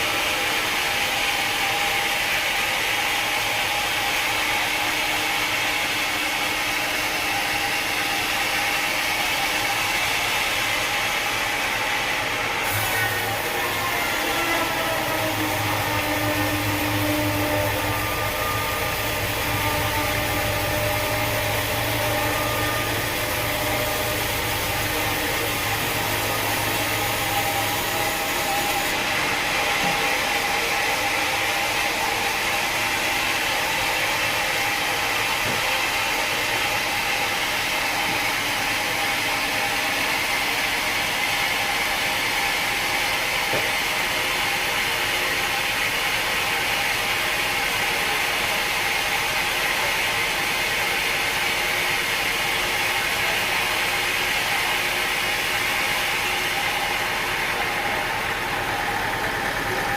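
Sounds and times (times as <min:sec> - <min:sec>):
sawmill machinery running: 0:00.0 - 0:59.9
low hum: 0:13.4 - 0:29.4.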